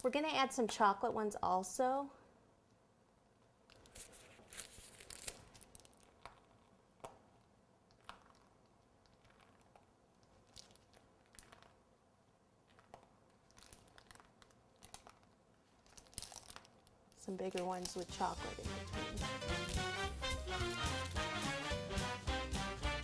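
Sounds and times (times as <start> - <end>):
plastic piping bag crinkling: 3.7 - 12.0, 12.6 - 20.0.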